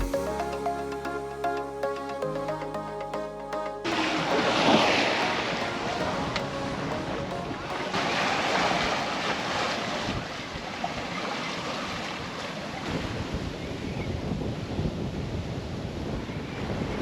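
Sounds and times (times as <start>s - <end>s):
ocean waves washing: 2.6s - 13.7s
wind buffeting microphone: 12.8s - 17.0s.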